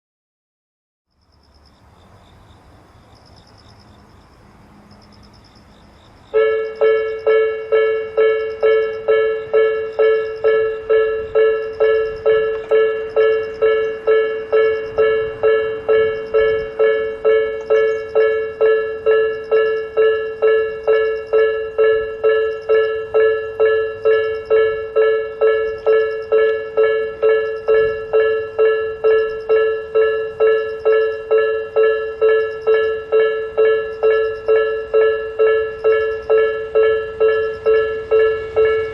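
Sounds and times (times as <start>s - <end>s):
level crossing alarm ringing: 4.9s - 38.9s.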